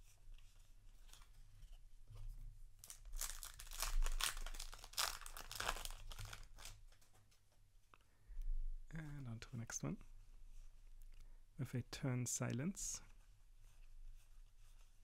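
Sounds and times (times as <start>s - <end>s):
foil wrapper tearing and crinkling: 2.8s - 6.8s.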